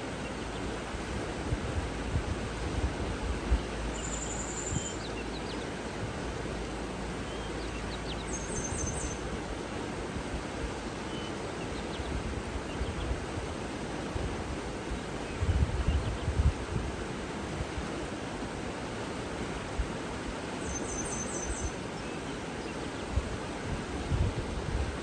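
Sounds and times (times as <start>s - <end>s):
water rushing: 0.0s - 25.0s.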